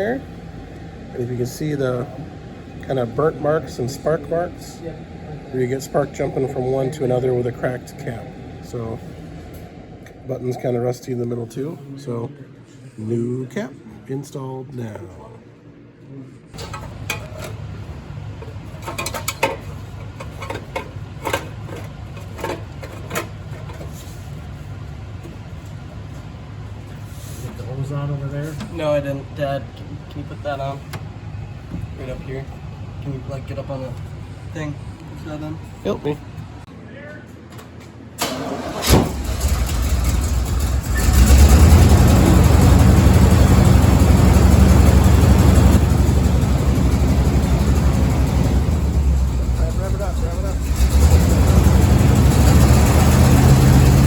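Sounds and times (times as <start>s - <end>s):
engine low rumble: 38.2s - 54.0s.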